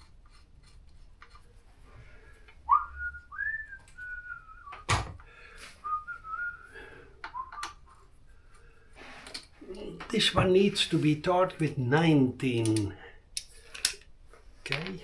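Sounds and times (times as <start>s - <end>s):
person whistling a tune: 2.7s - 4.9s, 5.8s - 8.0s.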